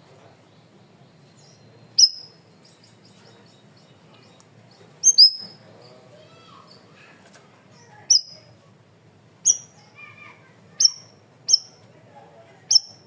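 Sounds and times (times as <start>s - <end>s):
songbird calling: 0.4s - 6.0s, 7.7s - 8.6s, 9.4s - 9.8s, 10.8s - 11.8s, 12.7s - 13.0s.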